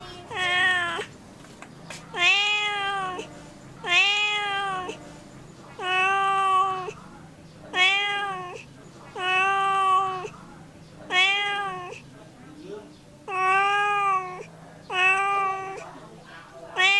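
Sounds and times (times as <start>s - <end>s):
cat meowing: 0.0s - 1.1s, 2.1s - 5.0s, 5.7s - 7.0s, 7.7s - 10.3s, 11.1s - 12.0s, 13.3s - 15.9s.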